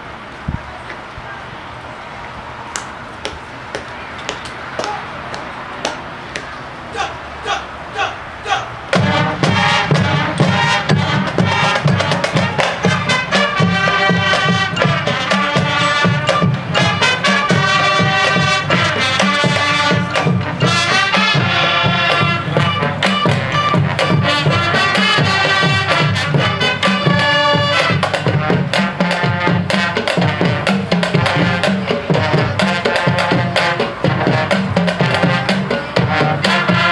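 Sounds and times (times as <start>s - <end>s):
marching band playing: 3.9s - 36.9s
sharp percussion strikes: 8.9s - 36.9s.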